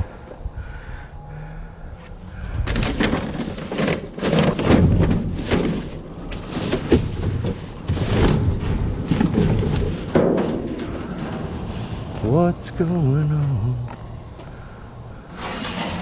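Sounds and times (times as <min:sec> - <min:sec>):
debris rustling and clattering: 0:02.0 - 0:12.2.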